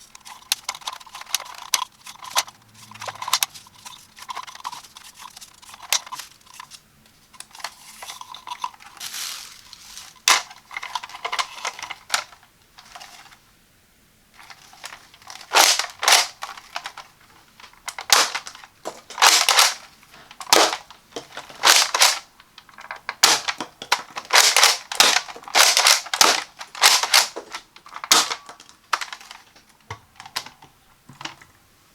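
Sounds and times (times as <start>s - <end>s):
rustling: 0.0s - 13.5s, 14.3s - 30.6s
plastic toy blaster clicks: 15.4s - 17.0s, 17.9s - 18.6s, 19.2s - 19.8s, 20.4s - 20.9s, 21.6s - 29.5s.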